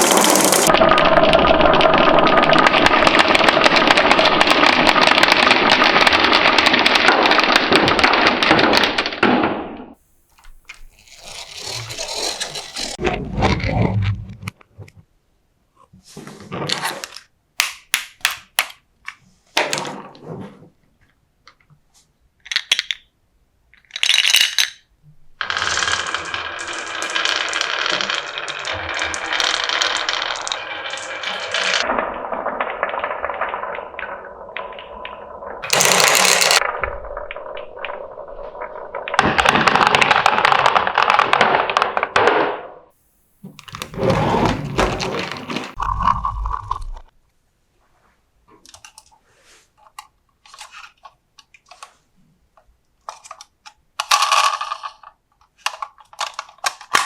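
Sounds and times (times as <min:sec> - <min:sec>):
marbles clicking and clattering: 0:00.0 - 0:09.2, 0:10.4 - 0:13.0, 0:22.4 - 0:23.0, 0:23.8 - 0:41.4, 0:43.6 - 0:47.1, 0:53.1 - 0:57.0
marbles rolling rumble: 0:00.0 - 0:09.2, 0:10.4 - 0:14.3, 0:23.9 - 0:24.8, 0:25.4 - 0:41.8, 0:43.4 - 0:47.1.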